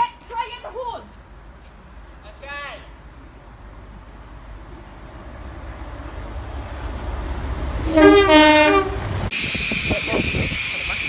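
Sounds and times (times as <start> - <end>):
train rumble: 3.0 - 11.0.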